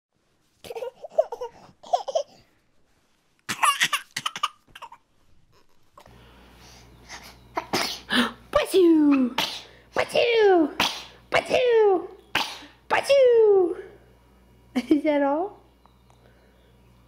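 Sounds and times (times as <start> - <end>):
faint steady hum: 0.2 - 17.0
baby laughing: 0.6 - 2.4, 3.5 - 5.0
baby sneezing: 3.5 - 5.0, 7.6 - 8.2, 9.1 - 11.7, 12.3 - 12.8.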